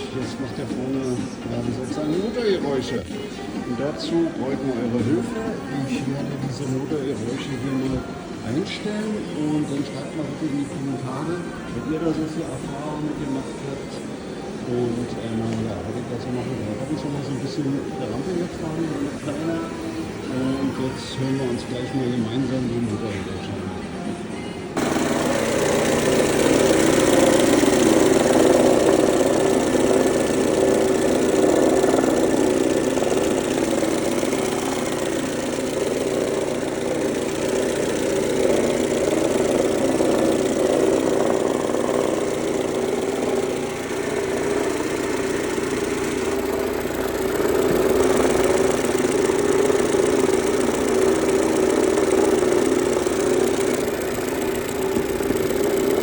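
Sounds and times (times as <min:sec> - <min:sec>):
engine noise from front: 0:00.0 - 0:21.9, 0:24.7 - 0:56.0
car engine idling: 0:24.8 - 0:56.0.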